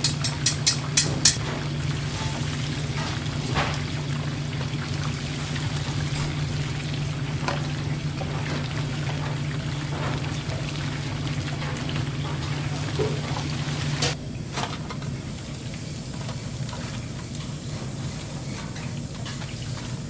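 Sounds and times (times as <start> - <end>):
dishes and utensils clinking: 0.0 - 1.4
ventilation hum: 0.0 - 20.0.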